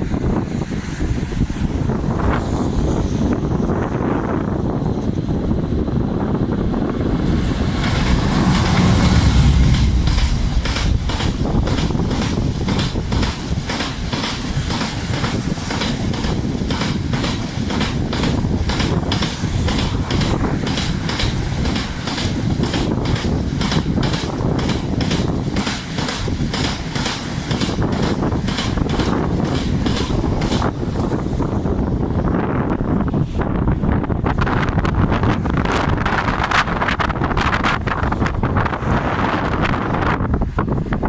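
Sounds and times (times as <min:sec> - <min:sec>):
train low rumble: 0:00.0 - 0:41.0
wheels clicking over rail joints: 0:09.7 - 0:33.4.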